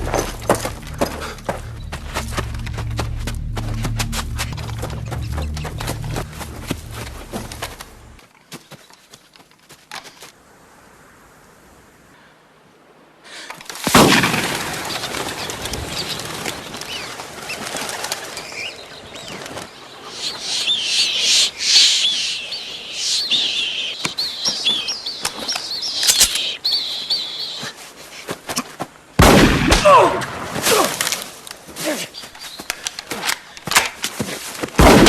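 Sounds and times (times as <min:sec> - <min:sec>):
flapping wings of birds: 0:14.4 - 0:21.0
bird calls and chirps: 0:15.3 - 0:27.8, 0:32.1 - 0:32.9
gunshot: 0:29.2 - 0:30.3, 0:34.8 - 0:35.0.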